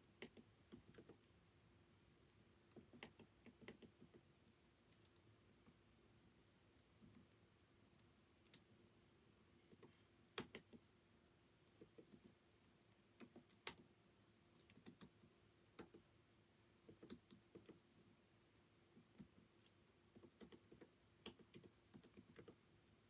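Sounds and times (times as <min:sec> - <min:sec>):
faint keyboard typing: 0:00.1 - 0:01.3, 0:02.2 - 0:05.8, 0:06.8 - 0:08.7, 0:09.6 - 0:10.9, 0:11.7 - 0:13.9, 0:14.5 - 0:16.1, 0:16.8 - 0:18.0, 0:18.9 - 0:22.6.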